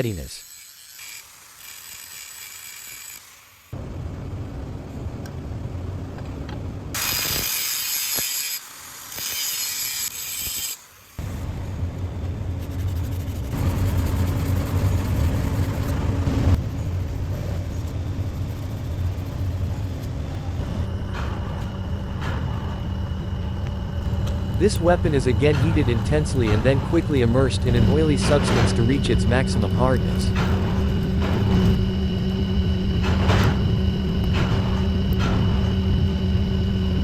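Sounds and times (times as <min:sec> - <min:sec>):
low machine hum: 0:03.8 - 0:07.0, 0:11.2 - 0:37.0
low machine rumble: 0:03.8 - 0:07.0, 0:11.2 - 0:37.0.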